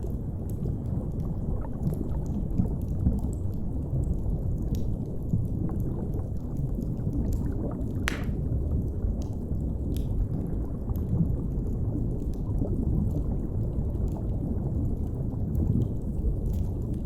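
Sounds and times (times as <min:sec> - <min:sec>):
faint fire crackles: 0:00.0 - 0:17.0.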